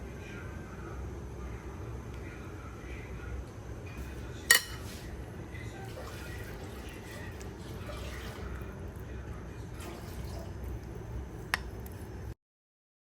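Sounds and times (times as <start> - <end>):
low steady hum: 0.0 - 12.4
dishes clinking: 4.0 - 5.2
faint liquid sounds: 4.0 - 12.3.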